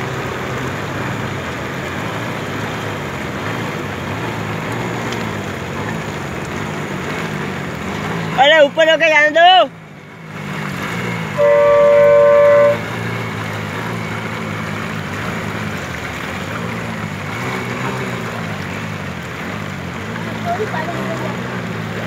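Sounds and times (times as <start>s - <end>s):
floodwater rushing: 0.0s - 22.0s
low engine hum: 0.0s - 22.0s
vehicle horn: 11.4s - 13.0s.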